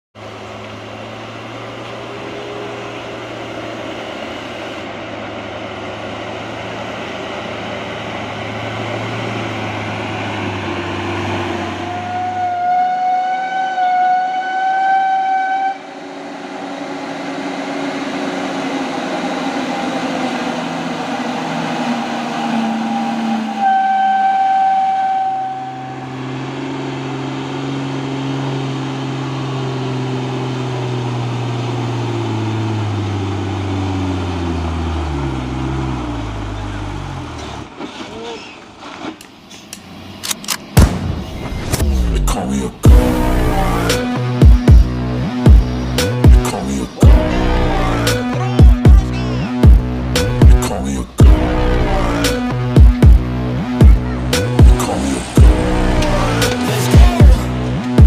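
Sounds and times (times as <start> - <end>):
truck engine droning: 0.1 - 58.0
long high-pitched tone: 21.9 - 27.1, 47.0 - 49.7, 51.2 - 57.8.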